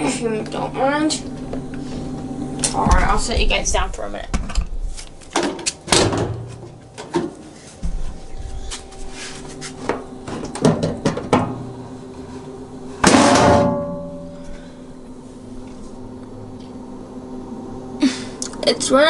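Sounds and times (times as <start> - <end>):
furnace blower humming: 0.0 - 19.0
loud metallic clang: 13.0 - 14.5.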